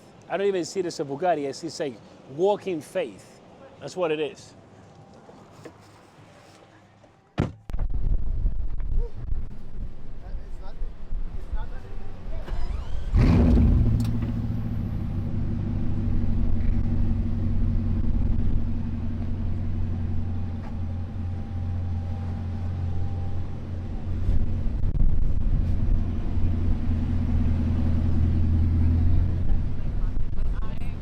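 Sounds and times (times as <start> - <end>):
car engine starting and idling: 12.2 - 31.0.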